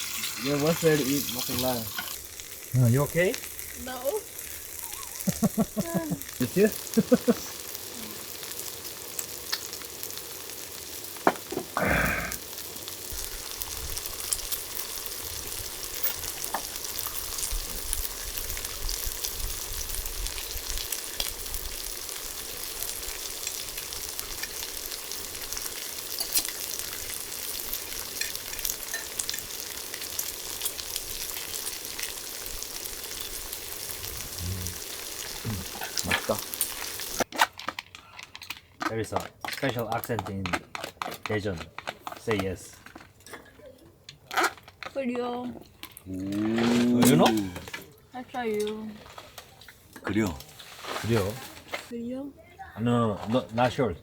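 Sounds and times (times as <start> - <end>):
food sizzling in a hot pan: 0.0 - 37.4, 46.2 - 47.8.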